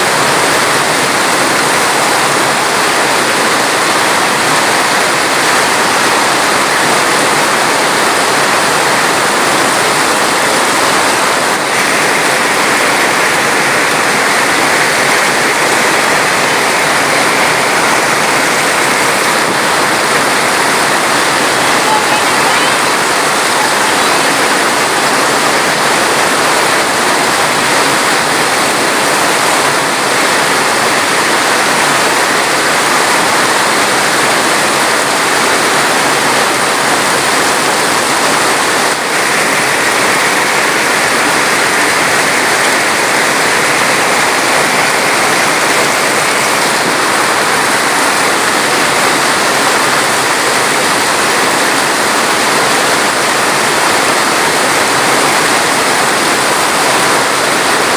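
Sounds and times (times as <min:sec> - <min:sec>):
rushing water: 0:00.0 - 0:57.9.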